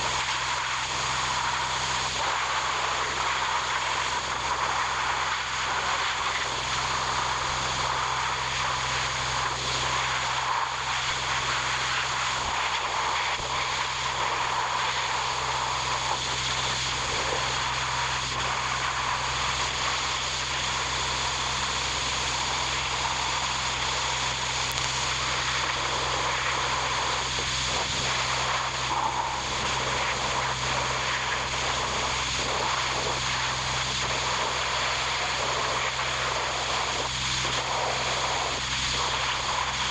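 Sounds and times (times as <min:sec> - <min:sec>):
steady machine drone: 0:00.0 - 0:39.9.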